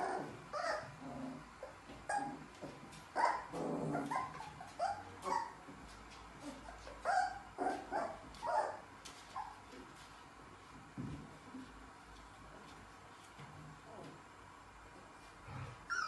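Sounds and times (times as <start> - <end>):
puppies yipping and whimpering: 0.0 - 1.0, 3.2 - 5.6, 6.6 - 8.8.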